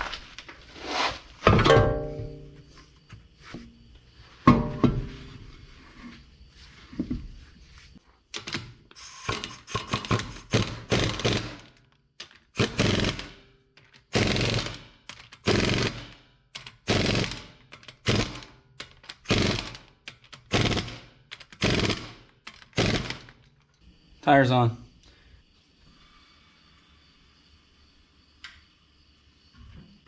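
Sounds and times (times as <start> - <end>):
impact wrench rattling bursts: 9.3 - 11.8, 12.5 - 13.4, 14.0 - 16.2, 16.8 - 23.3.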